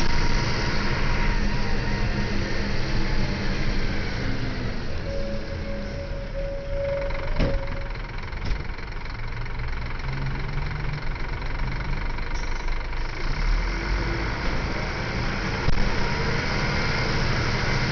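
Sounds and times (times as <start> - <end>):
bus diesel engine running: 0.0 - 17.9.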